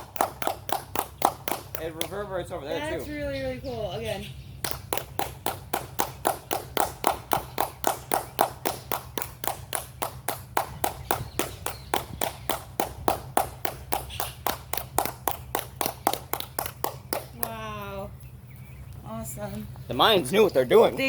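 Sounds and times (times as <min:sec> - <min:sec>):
rapid hand clapping: 0:00.0 - 0:02.3, 0:04.6 - 0:17.6.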